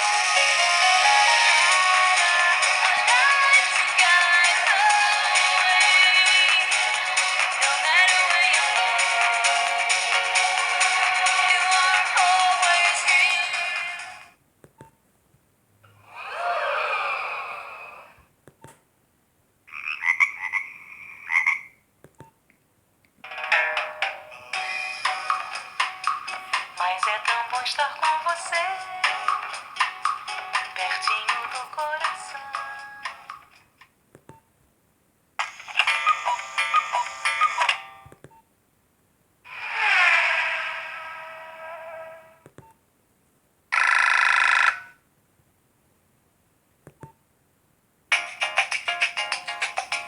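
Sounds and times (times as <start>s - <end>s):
rasping croak-like ringtone: 19.7s - 21.8s, 35.8s - 38.0s, 43.7s - 45.0s
mobile phone ringtone: 43.7s - 45.0s.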